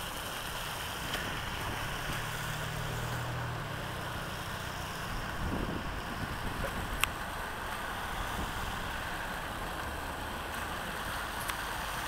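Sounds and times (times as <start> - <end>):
street noise: 0.0 - 12.0
vehicle engine humming: 0.0 - 12.0.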